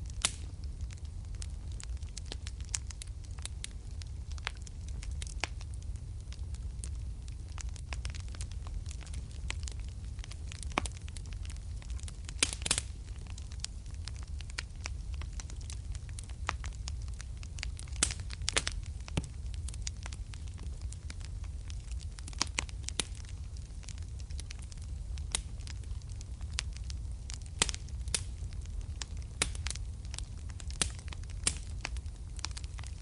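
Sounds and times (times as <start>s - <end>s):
fire crackles and pops: 0.0s - 33.0s
fire low rumble: 0.0s - 33.0s.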